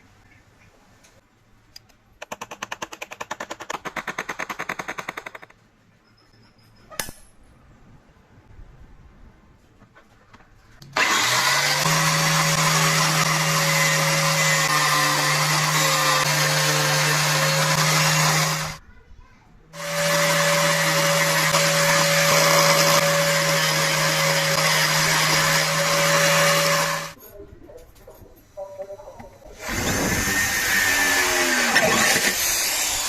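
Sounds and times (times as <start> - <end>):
power tool humming and whining: 11.0 - 18.8, 19.8 - 27.2, 29.6 - 33.0.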